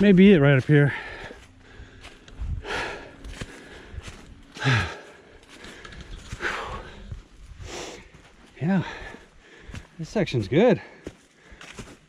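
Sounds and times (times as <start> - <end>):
heavy breathing exhales: 4.6 - 8.1.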